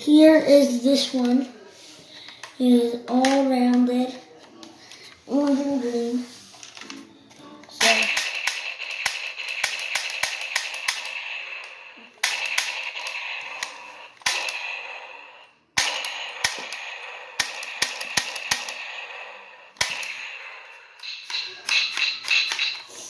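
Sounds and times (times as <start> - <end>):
toy pistol trigger clicks: 7.8 - 14.9, 15.8 - 19.2
hissing gunshot sound effects: 7.8 - 20.9.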